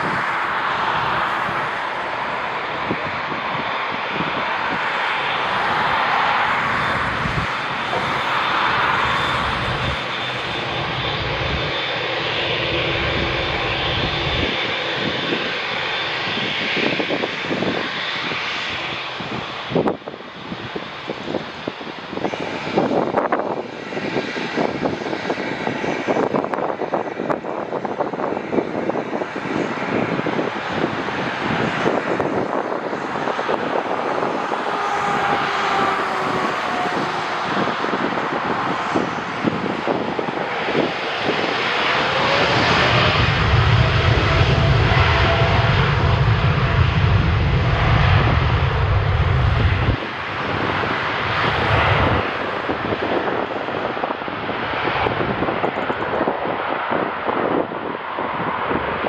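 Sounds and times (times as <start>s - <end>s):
jet engines whining: 0.0s - 59.0s
wind buffeting microphone: 0.0s - 59.0s
heavy low rumble: 41.9s - 53.4s.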